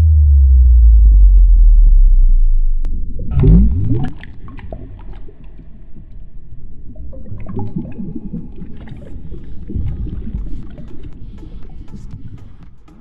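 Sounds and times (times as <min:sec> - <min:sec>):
deep rising water plop: 0:00.0 - 0:12.6
small drips and splashes: 0:03.8 - 0:12.6.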